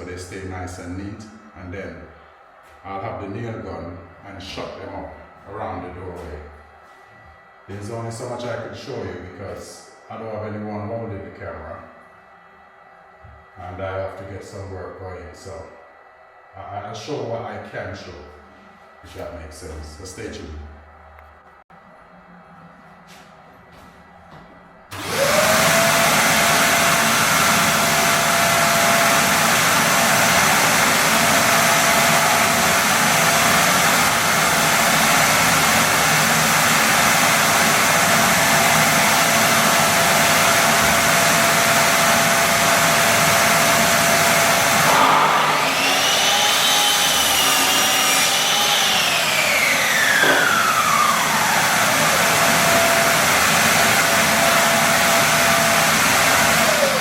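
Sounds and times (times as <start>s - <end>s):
electric motor whining: 24.9s - 34.4s
mitre saw whine: 24.9s - 57.0s.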